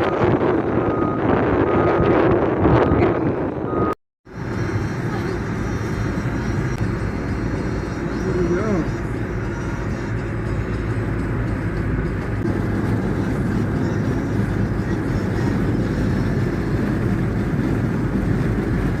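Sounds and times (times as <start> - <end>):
bulldozer diesel engine running: 0.0 - 19.0.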